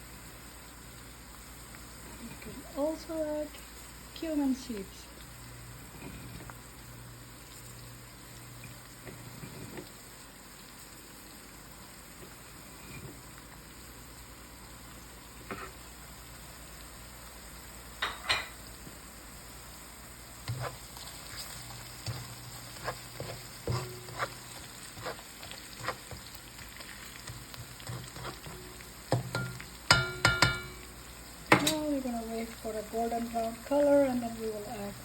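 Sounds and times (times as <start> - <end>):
food sizzling in a wok: 0.0 - 35.0
utensil clinking against wok: 29.1 - 30.8.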